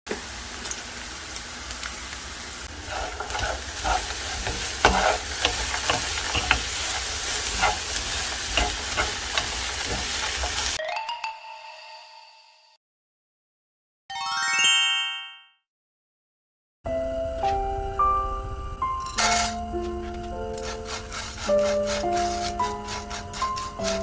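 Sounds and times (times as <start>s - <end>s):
food sizzling in a pan: 0.1s - 10.8s, 20.5s - 24.0s
spatula scraping and clacking on pan: 2.6s - 10.8s, 19.2s - 24.0s.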